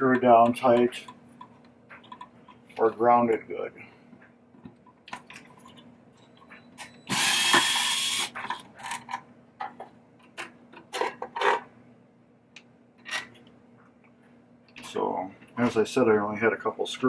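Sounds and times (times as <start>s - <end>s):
clicks and knocks of handling: 0.1s - 3.0s
powered screwdriver running: 7.1s - 8.4s.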